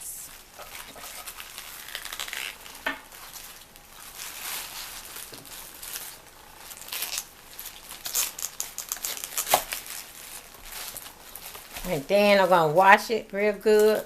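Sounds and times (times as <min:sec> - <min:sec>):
crisp crunching and tearing: 0:00.3 - 0:12.4
knife cutting cauliflower: 0:07.0 - 0:11.9.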